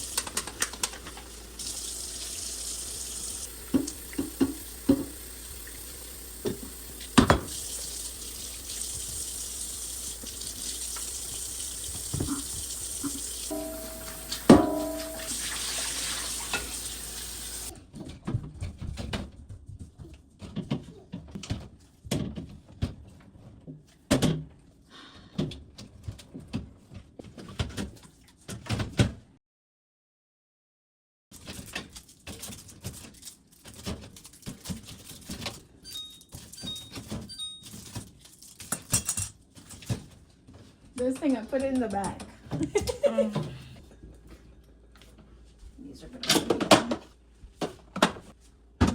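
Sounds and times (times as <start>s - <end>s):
tap running: 0.0s - 17.7s
items clunking on fridge shelves: 2.8s - 9.3s, 10.2s - 19.4s.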